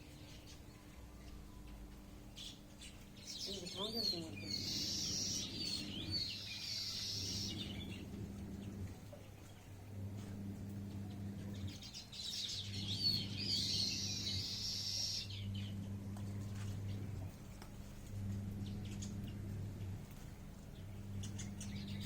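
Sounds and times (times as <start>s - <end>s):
songbird singing: 0.0s - 22.0s
low hum: 4.4s - 22.0s.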